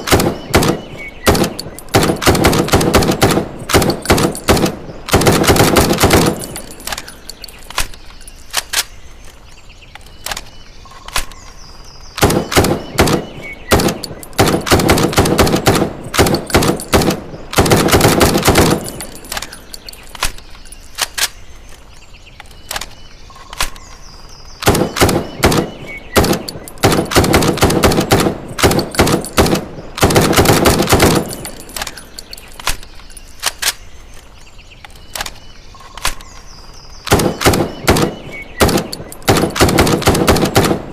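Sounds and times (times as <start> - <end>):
rifle automatic fire: 0.0 - 6.6, 12.2 - 19.1, 24.6 - 31.5, 37.1 - 40.9
single rifle shots: 0.0 - 7.1, 12.2 - 19.6, 24.6 - 32.8, 37.1 - 40.9.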